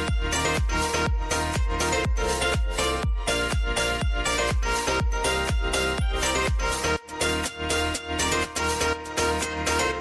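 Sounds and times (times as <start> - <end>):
deep kick drums: 0.0 - 6.8
electronic dance music: 0.0 - 10.0.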